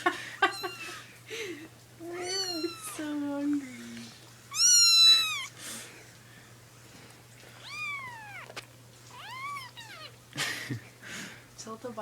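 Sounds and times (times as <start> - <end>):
kitten meowing: 2.2 - 3.2, 4.5 - 5.6, 7.6 - 10.2.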